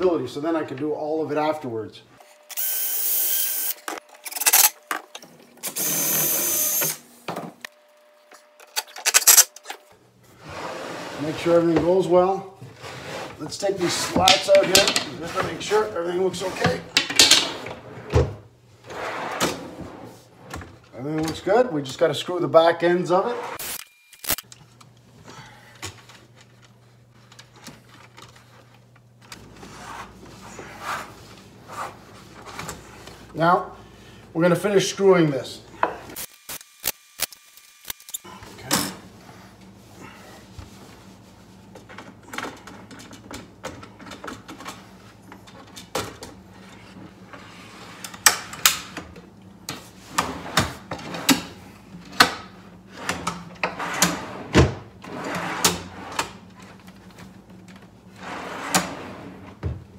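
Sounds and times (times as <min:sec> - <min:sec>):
power drill whining: 0:02.4 - 0:04.7, 0:05.6 - 0:07.0.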